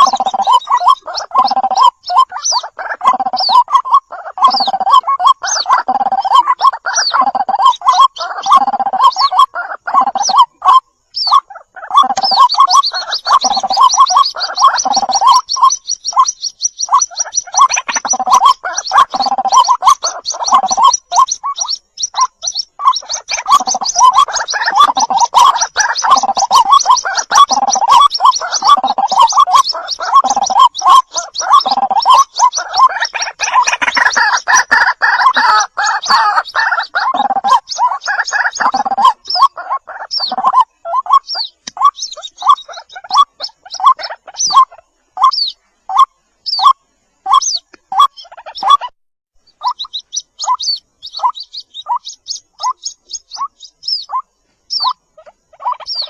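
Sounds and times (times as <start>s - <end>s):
fast high chattering: 0.0s - 10.8s, 11.8s - 44.8s
waterhen gurgling calls: 0.0s - 56.0s.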